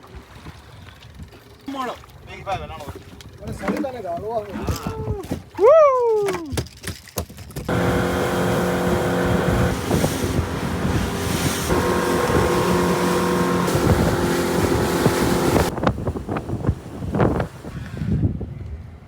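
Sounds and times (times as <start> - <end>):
motorboat engine running: 7.7 - 17.8
wind on microphone: 7.7 - 19.0.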